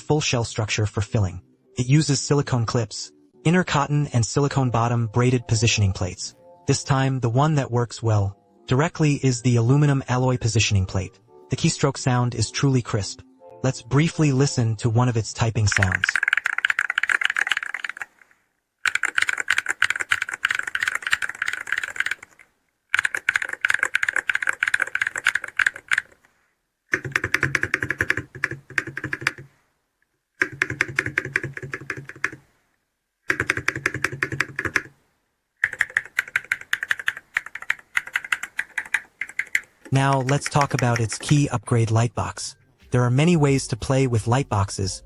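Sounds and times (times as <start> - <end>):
mechanical keyboard typing: 15.6 - 18.2, 18.8 - 26.2, 26.9 - 29.5, 30.4 - 32.4, 33.3 - 34.9, 35.6 - 41.5.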